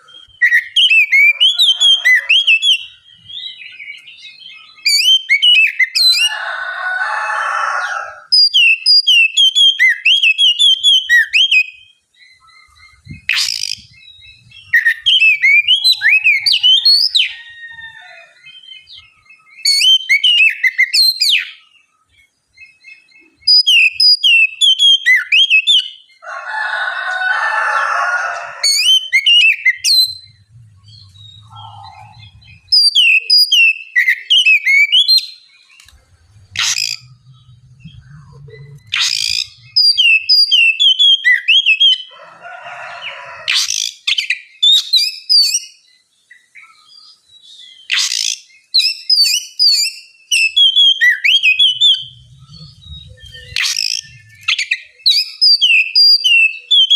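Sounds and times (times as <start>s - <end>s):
bird whistling song: 0.0s - 6.3s, 8.3s - 26.2s, 28.6s - 42.2s, 43.0s - 56.9s
bird harsh rasping notes: 26.3s - 34.8s, 35.7s - 44.0s, 51.0s - 54.9s.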